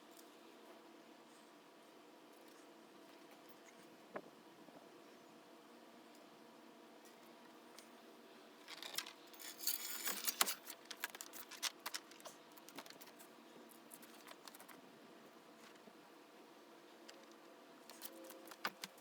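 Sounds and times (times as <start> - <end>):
metal chain rattling: 8.7 - 12.2.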